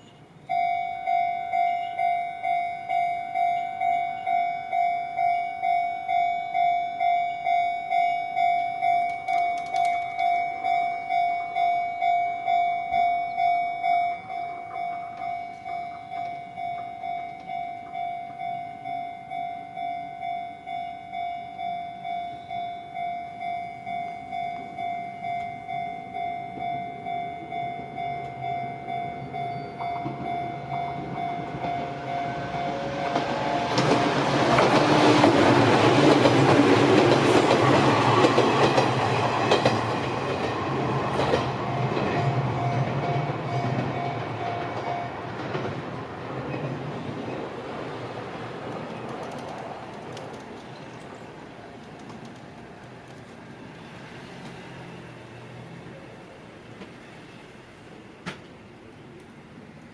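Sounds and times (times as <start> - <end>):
electronic crossing bell dinging: 0.0 - 34.0
low rumble of electric train: 0.0 - 59.9.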